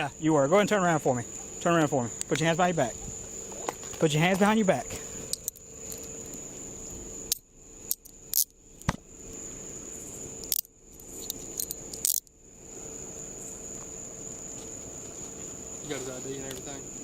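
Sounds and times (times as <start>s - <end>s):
handcuffs clicking and rattling: 5.3s - 6.1s, 10.5s - 12.3s.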